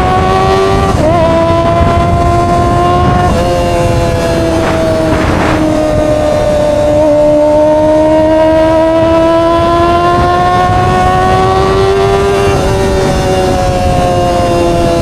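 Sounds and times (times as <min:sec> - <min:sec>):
motorcycle engine at high revs: 0:00.0 - 0:15.0.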